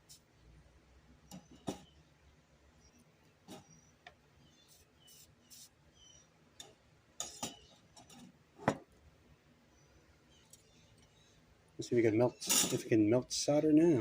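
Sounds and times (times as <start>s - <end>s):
items tapping on a workbench: 1.3s - 1.9s, 8.6s - 8.9s.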